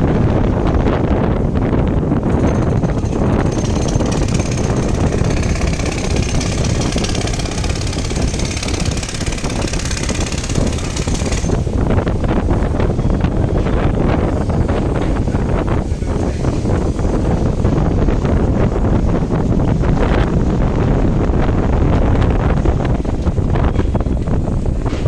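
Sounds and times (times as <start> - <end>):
low rumble: 0.0 - 25.0
wind buffeting microphone: 0.0 - 25.0
hissing mechanical rattle: 2.0 - 20.5.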